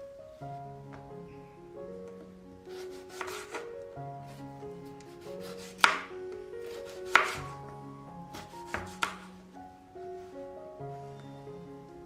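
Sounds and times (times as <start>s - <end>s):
soft background music: 0.0s - 12.0s
knife chopping on cutting board: 2.7s - 3.6s, 5.4s - 7.5s, 8.3s - 9.3s.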